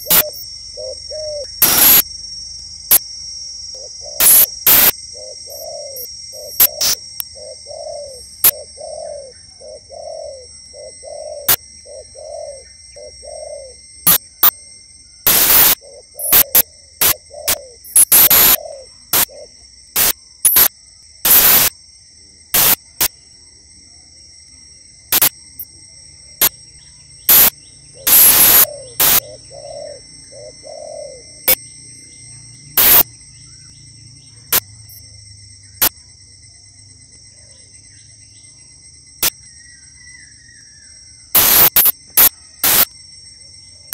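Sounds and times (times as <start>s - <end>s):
doves cooing: 0.0s - 2.0s, 3.8s - 13.8s, 15.3s - 19.6s, 27.3s - 31.6s
high-pitched hum: 0.0s - 19.4s, 20.0s - 20.7s, 21.3s - 21.7s, 22.6s - 23.1s, 25.1s - 25.6s, 27.2s - 33.7s, 41.4s - 42.9s
loud bursts of noise: 1.6s - 2.0s, 15.3s - 17.2s, 32.8s - 33.0s, 41.4s - 41.9s.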